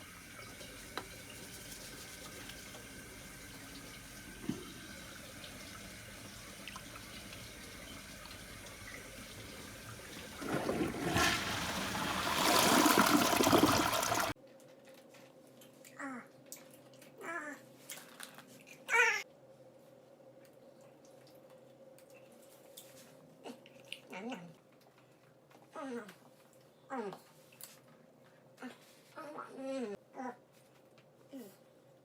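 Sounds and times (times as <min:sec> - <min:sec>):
toilet flushing: 0:00.0 - 0:14.4.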